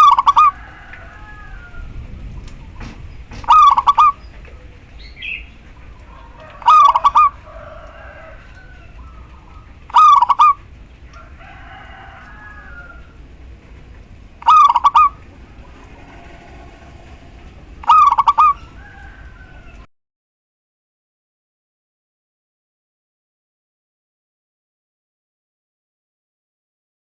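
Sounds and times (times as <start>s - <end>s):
dove cooing: 0.0s - 19.9s.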